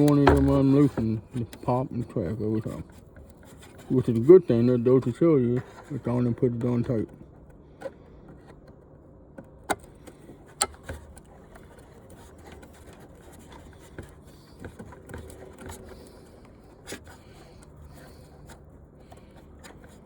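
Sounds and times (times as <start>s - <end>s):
plastic clicks and cracks: 0.0s - 1.7s
low steady hum: 0.0s - 20.0s.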